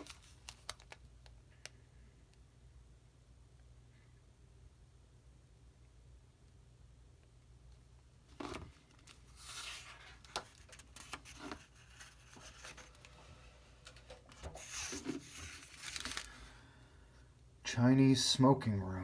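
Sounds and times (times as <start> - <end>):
paper pages rustling: 0.0 - 1.0, 8.3 - 16.5.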